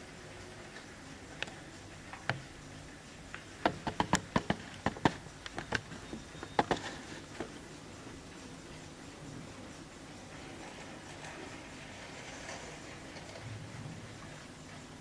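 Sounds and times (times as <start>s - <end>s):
sharp clicks and taps: 3.3s - 6.0s.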